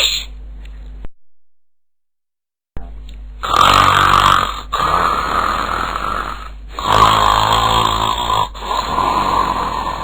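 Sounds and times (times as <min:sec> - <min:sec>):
man snoring loudly: 0:03.4 - 0:10.0.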